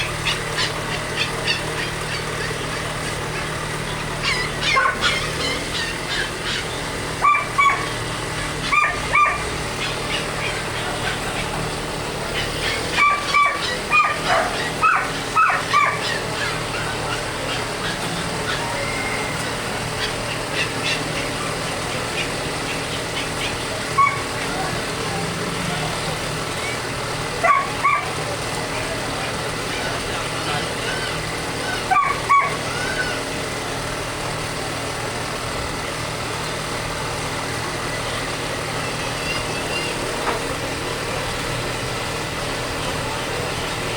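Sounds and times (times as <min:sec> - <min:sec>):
dog barking: 0:00.0 - 0:11.7, 0:12.3 - 0:19.2, 0:19.9 - 0:24.8, 0:27.3 - 0:28.4, 0:30.7 - 0:33.2
steady engine or traffic noise: 0:00.0 - 0:43.9.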